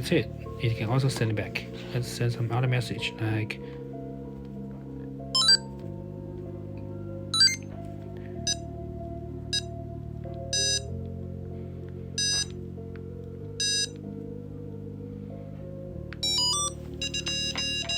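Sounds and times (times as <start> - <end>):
background music with sustained chords: 0.0 - 17.9
buzzer beeping morse code: 5.4 - 5.6, 7.4 - 7.6, 10.6 - 10.9, 12.2 - 12.5, 13.6 - 13.9, 16.2 - 17.9.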